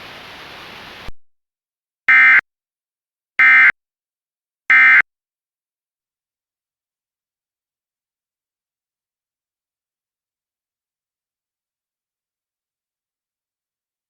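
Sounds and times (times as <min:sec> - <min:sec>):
faint hiss: 0:00.0 - 0:01.1
digital data tone bursts: 0:02.1 - 0:02.4.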